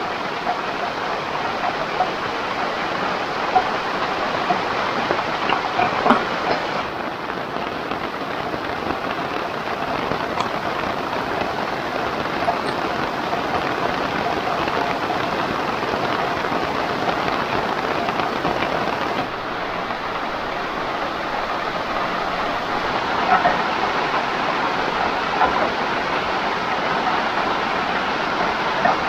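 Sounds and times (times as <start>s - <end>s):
heavy rain hissing: 0.0s - 29.0s.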